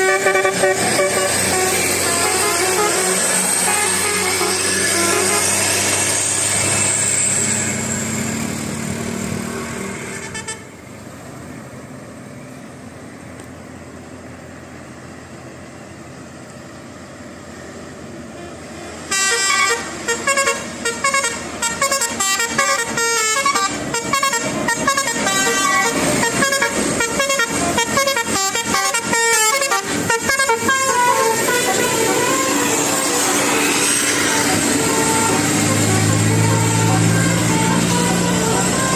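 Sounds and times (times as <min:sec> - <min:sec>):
multi-tone bus air horn tune: 0:00.0 - 0:07.9, 0:09.5 - 0:10.8, 0:18.3 - 0:38.9
bus running noise: 0:00.0 - 0:38.9.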